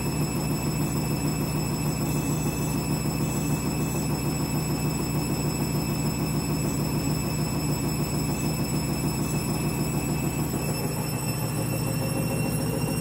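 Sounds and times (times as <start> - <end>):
washing machine spinning hum: 0.0 - 13.0
thin high whining tones: 8.8 - 13.0.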